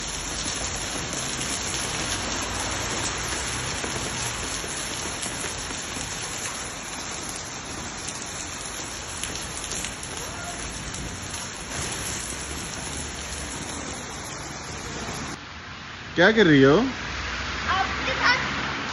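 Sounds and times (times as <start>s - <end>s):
hail and rain falling: 0.0s - 15.4s.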